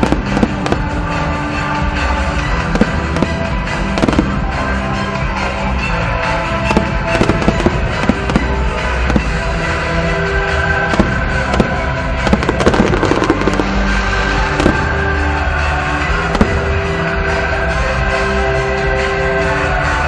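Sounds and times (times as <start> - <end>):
fireworks bursting: 0.0 - 1.6, 2.3 - 5.4, 6.5 - 17.6
music playing: 0.0 - 20.0.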